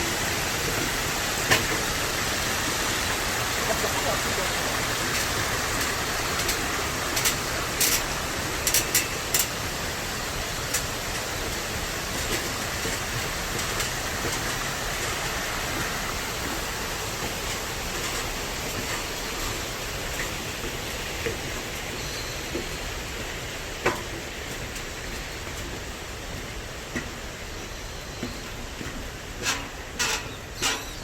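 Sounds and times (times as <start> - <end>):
stream running: 0.0 - 31.0.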